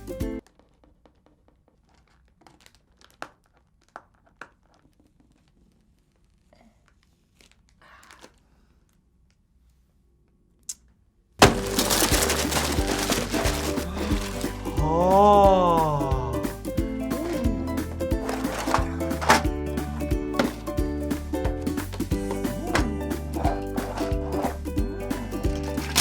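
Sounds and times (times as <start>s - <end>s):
packaging crinkle: 0.5s - 8.4s, 11.4s - 14.8s, 18.1s - 19.4s, 23.4s - 24.6s, 25.4s - 26.0s
loud music: 11.4s - 26.0s
plastic pieces clicking: 25.4s - 26.0s.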